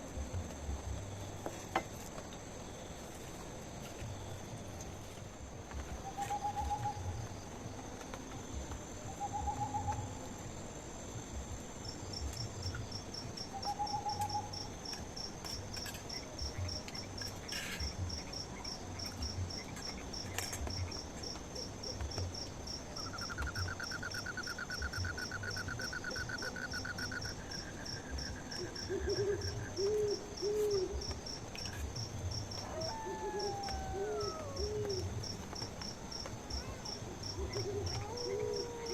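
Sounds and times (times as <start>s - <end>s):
insect trill: 0.0s - 38.9s
insects chirping: 0.0s - 38.9s
night animal hooting calls: 13.5s - 14.6s, 23.0s - 31.1s, 32.5s - 35.4s, 37.2s - 38.9s.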